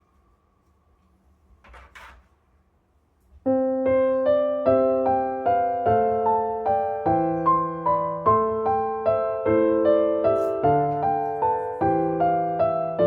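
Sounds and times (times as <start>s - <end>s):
piano music: 3.4s - 13.0s.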